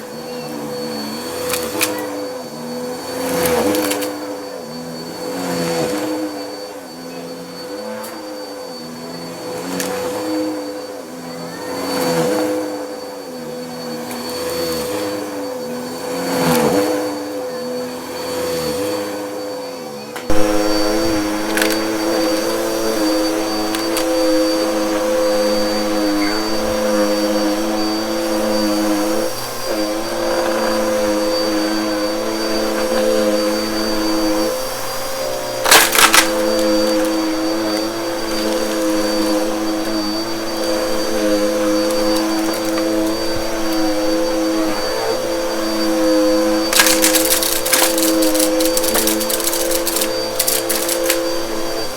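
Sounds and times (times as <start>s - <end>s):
vacuum cleaner motor whine: 0.0s - 51.9s
loud crackle: 35.6s - 37.2s, 46.7s - 51.2s.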